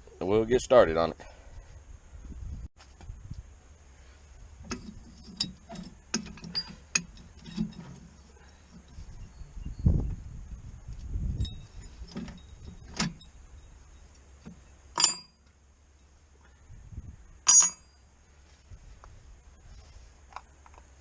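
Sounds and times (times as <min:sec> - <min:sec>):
metal parts thumping and knocking: 0:04.6 - 0:09.0, 0:11.4 - 0:13.3, 0:14.4 - 0:15.4, 0:17.4 - 0:17.9
ringing metal clinks: 0:05.3 - 0:08.6, 0:11.3 - 0:14.1, 0:15.0 - 0:16.2, 0:17.4 - 0:18.1.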